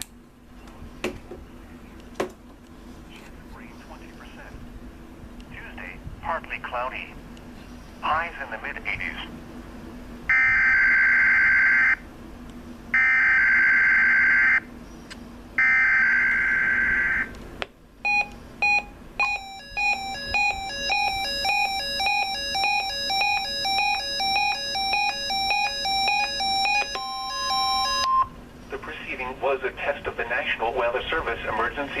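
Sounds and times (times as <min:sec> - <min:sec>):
short alert beeps: 0:18.1 - 0:28.3
screeching digital data bursts: 0:19.2 - 0:28.1.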